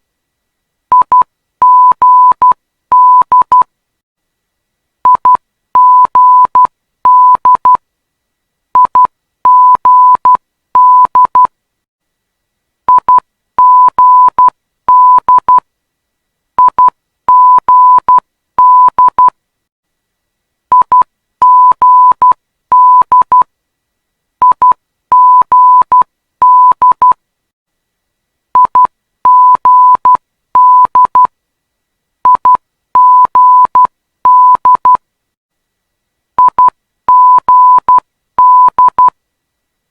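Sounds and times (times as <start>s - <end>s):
morse code beeps: 8.8s - 11.5s, 20.8s - 23.4s, 24.4s - 27.2s, 28.6s - 31.3s, 32.3s - 35.0s, 36.4s - 39.1s.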